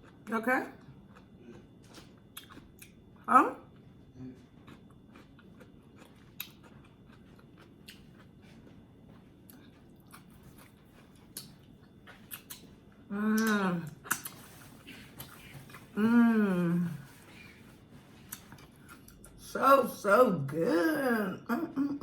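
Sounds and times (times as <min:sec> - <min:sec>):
person chewing: 0:01.0 - 0:03.0, 0:04.4 - 0:08.8, 0:09.4 - 0:16.1, 0:16.9 - 0:19.4
person humming: 0:13.1 - 0:14.0, 0:16.0 - 0:17.1
wet mouth clicks: 0:13.4 - 0:14.4.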